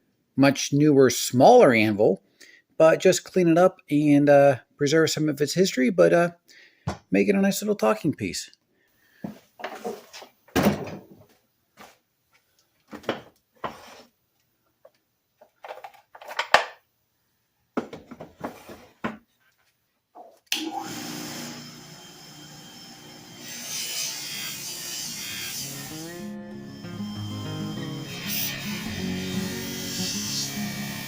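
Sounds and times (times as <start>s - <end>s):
background music: 25.4s - 31.0s.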